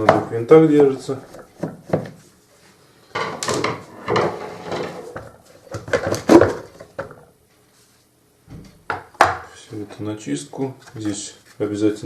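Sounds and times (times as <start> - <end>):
plastic parts knocking and clattering: 1.3 - 2.2, 3.2 - 4.3, 5.1 - 7.3.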